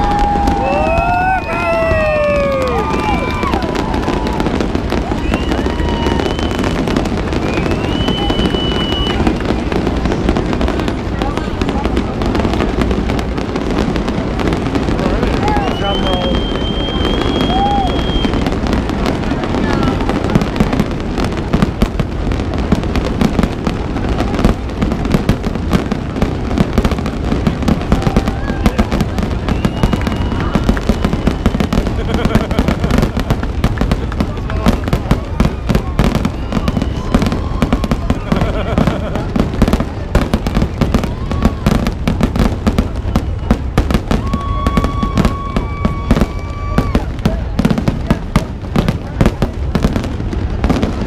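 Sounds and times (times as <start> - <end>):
firework whistles: 0.0 - 10.8, 14.4 - 21.8, 26.5 - 33.8, 34.5 - 47.6
fireworks bangs and crackles: 0.0 - 51.0
steady high whistle: 7.4 - 9.2, 15.4 - 18.5.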